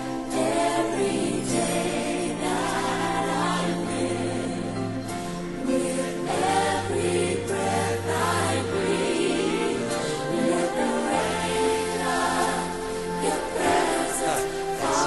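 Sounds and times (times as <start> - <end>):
gospel choir singing: 0.0 - 15.0.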